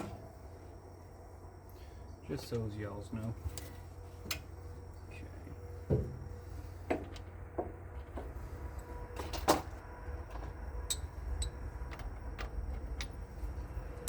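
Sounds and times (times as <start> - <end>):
hand tools clicking and knocking: 10.9 - 13.3.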